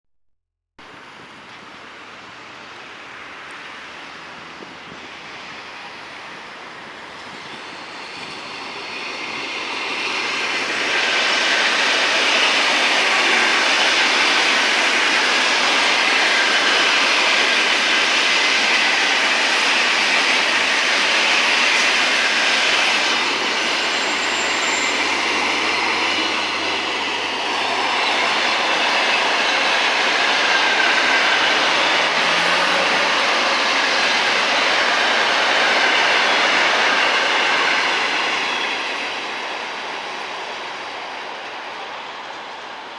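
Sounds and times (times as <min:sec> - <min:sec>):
electric train wheels on rails: 0:00.8 - 0:42.9.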